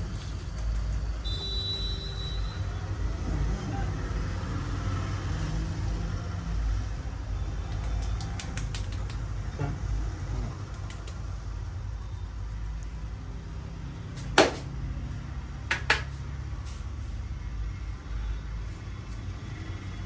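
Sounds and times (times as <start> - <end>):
low rumble of road vehicles: 0.0 - 20.0
sharp clicks: 7.7 - 9.3, 10.7 - 11.4.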